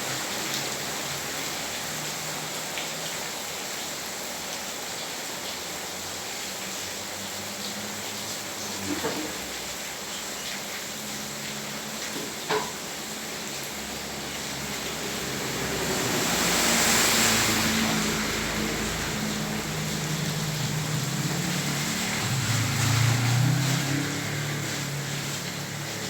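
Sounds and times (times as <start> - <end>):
rain on flooded street: 0.0 - 26.0
vehicle passing: 13.7 - 26.0
sharp splashes or knocks: 21.6 - 25.0.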